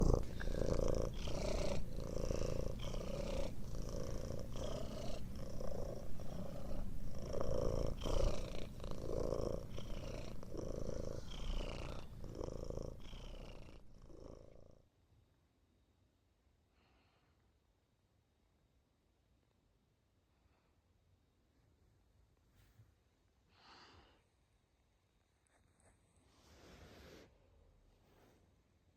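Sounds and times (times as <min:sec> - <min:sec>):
cat purring: 0:00.0 - 0:14.9.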